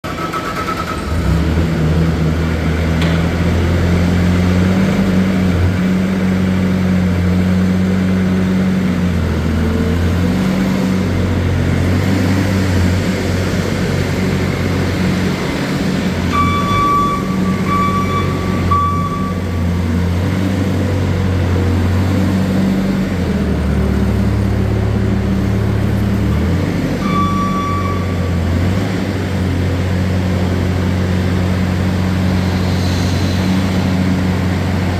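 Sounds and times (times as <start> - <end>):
diesel engine running: 0.0 - 34.9
beeping tone: 16.3 - 19.8, 27.0 - 28.4.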